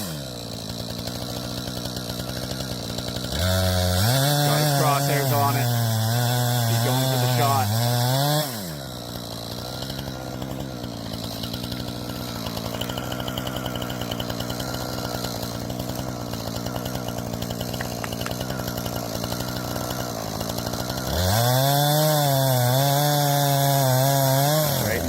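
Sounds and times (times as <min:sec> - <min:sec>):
chainsaw engine idling and revving: 0:00.0 - 0:25.0.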